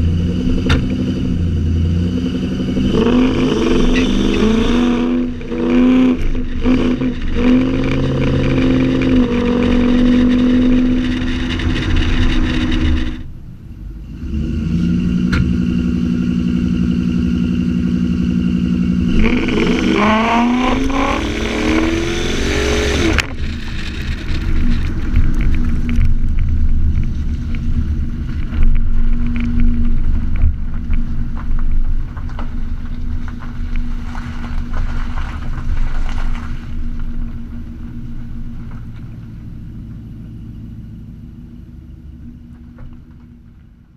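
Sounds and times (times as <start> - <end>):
truck engine revving: 0.0 - 13.4, 14.0 - 30.2.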